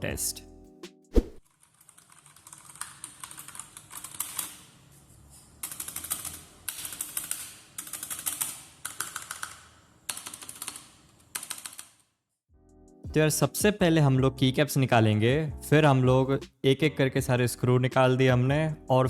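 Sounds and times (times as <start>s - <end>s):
mechanical keyboard keys clacking: 1.6s - 4.6s, 5.6s - 11.9s.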